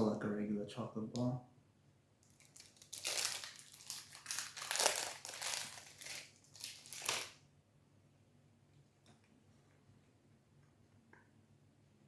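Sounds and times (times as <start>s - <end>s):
plastic wrapper crinkling: 2.2s - 7.4s.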